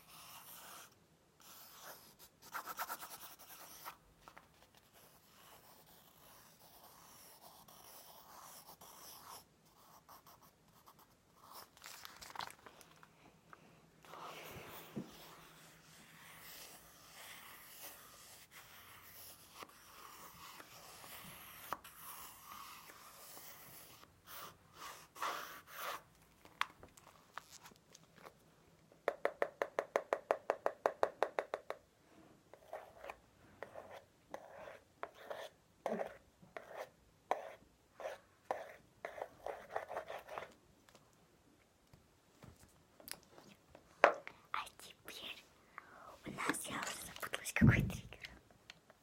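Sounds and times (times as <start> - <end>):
pencil scratching on paper: 0.0 - 4.0, 4.6 - 11.7, 14.0 - 26.1, 32.5 - 40.5.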